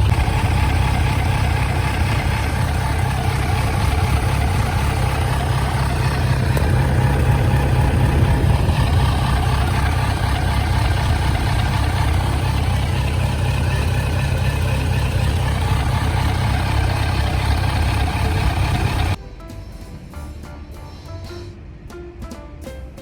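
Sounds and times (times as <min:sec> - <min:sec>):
motorcycle engine idling: 0:00.0 - 0:19.2.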